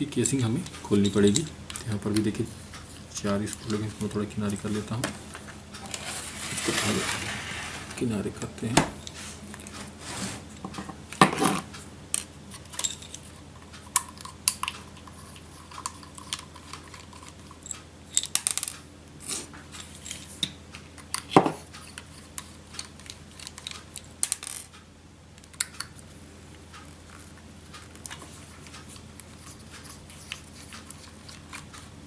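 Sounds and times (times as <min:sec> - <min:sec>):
steady low hum: 0:00.0 - 0:18.2.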